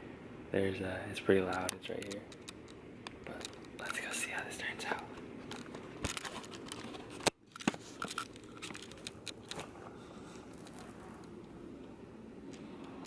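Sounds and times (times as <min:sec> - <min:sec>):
camera handling rustling: 0:05.4 - 0:11.5.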